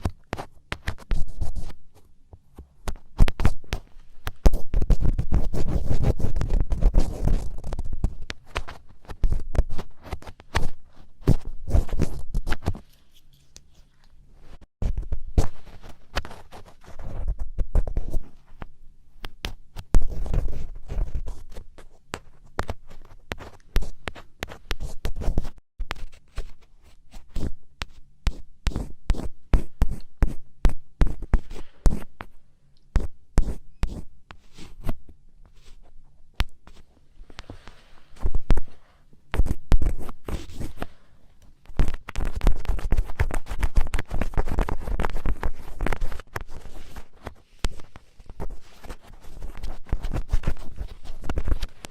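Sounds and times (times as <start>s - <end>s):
ear pick scratching: 41.7s - 51.9s.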